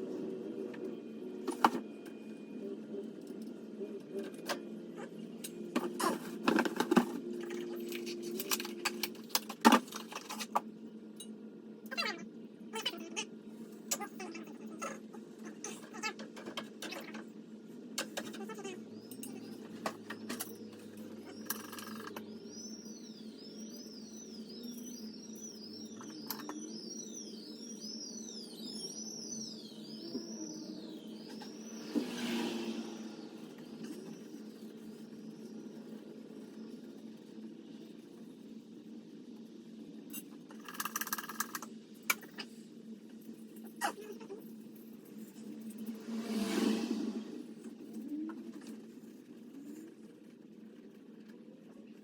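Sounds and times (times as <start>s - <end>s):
low synthesizer drone: 0.0s - 9.5s
steady low hum: 0.0s - 52.0s
clicks and rattles of small parts: 5.8s - 10.7s.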